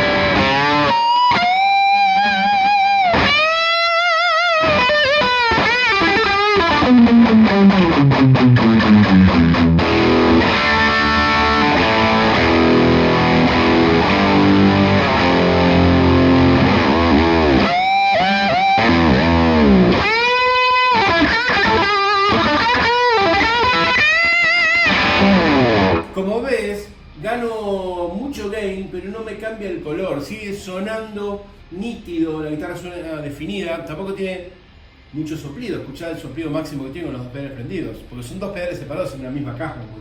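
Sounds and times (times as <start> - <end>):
distorted electric guitar lead: 0.0 - 26.2.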